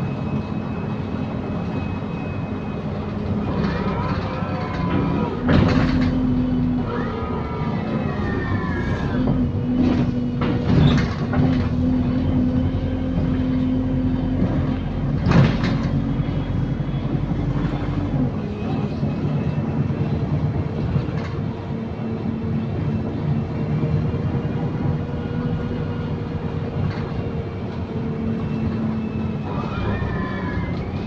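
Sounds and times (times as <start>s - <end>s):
bus drivetrain drone: 0.0s - 31.0s
rattles and knocks from bus body: 3.1s - 6.6s, 9.2s - 21.7s, 26.0s - 28.9s.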